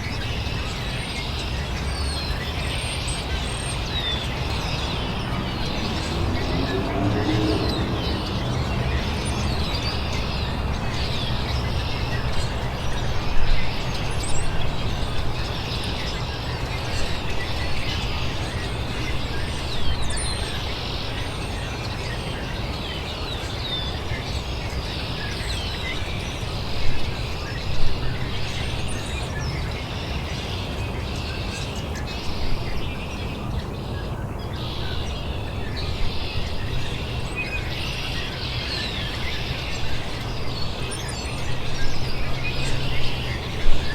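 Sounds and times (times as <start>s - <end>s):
songbirds chirping: 0.0s - 43.9s
steady low rumble: 3.9s - 13.3s.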